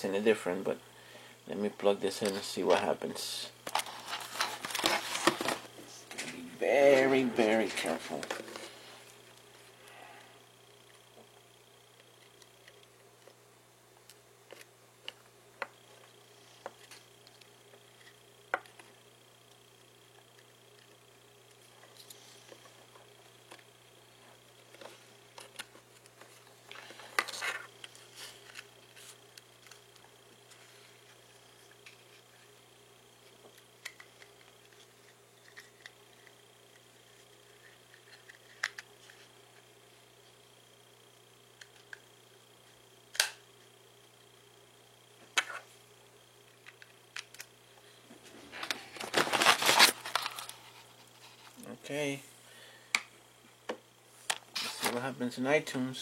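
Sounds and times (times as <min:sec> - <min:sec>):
cable rustling: 0:48.1 - 0:51.7.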